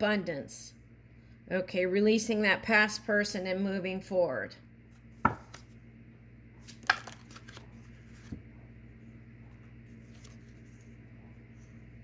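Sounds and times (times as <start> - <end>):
cards snapping: 6.7 - 7.7.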